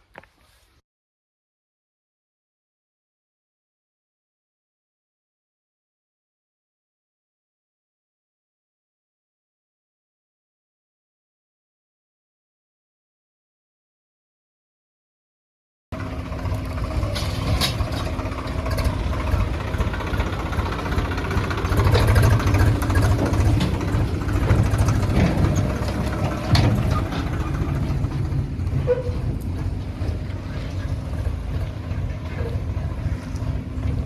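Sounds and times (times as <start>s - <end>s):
heavy diesel machinery rumbling: 16.0s - 34.0s
metallic clanks: 16.9s - 34.0s.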